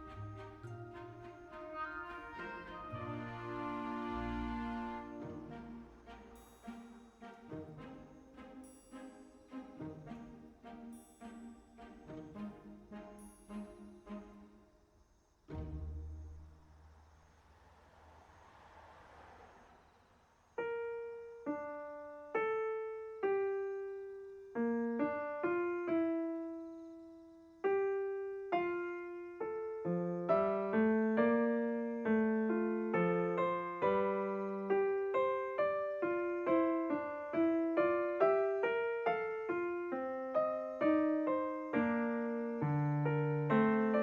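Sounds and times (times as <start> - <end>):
solo piano melody: 0.0 - 7.9, 20.6 - 44.0.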